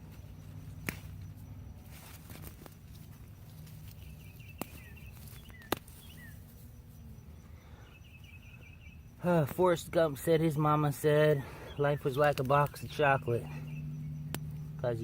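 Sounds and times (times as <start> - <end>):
potatoes shuffling in soil: 0.1 - 7.0
sharp clicks: 14.2 - 14.6.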